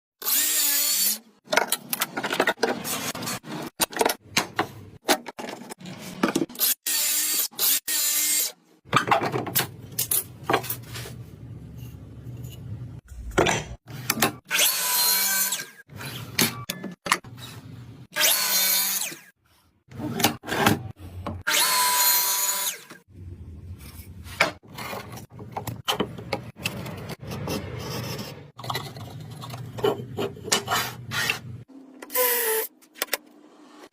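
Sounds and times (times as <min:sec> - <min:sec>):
scraping and rubbing: 0:26.5 - 0:31.7.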